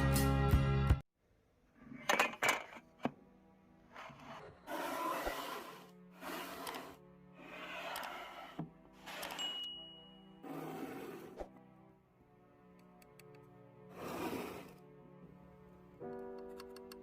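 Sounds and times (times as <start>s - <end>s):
rough hand scraping: 4.0s - 9.4s, 10.4s - 11.5s, 13.9s - 14.8s.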